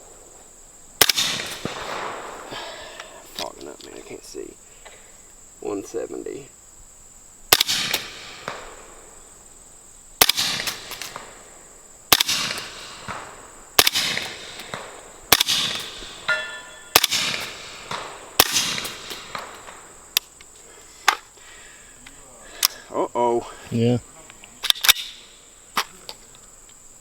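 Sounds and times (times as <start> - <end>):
suppressed rifle shots: 0.9 - 3.6, 7.5 - 9.3, 10.2 - 20.4, 24.6 - 26.0.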